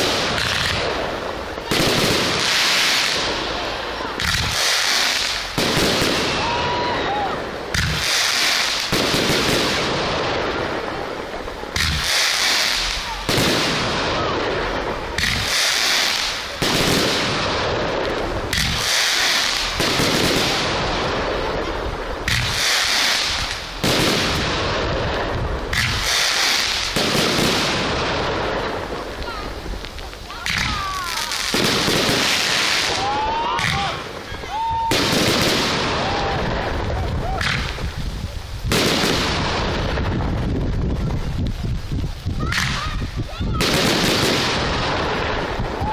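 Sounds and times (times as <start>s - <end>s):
fireworks bangs: 0.0s - 45.9s
rumble of echoing detonations: 16.5s - 45.9s.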